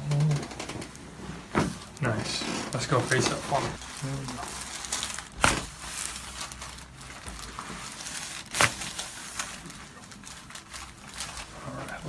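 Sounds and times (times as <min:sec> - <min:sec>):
rustling and shuffling on a table: 0:00.2 - 0:04.7.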